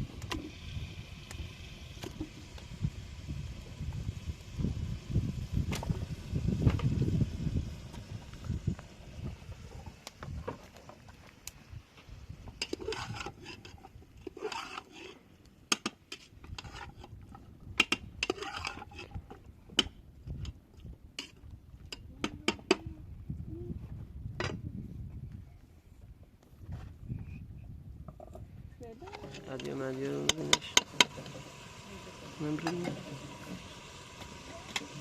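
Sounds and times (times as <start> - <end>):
utensils scraping: 12.6 - 17.2, 18.2 - 19.2.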